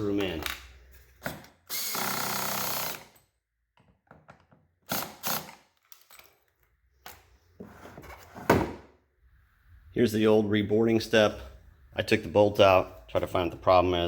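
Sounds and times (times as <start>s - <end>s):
cordless drill driving a bolt: 1.7s - 3.2s.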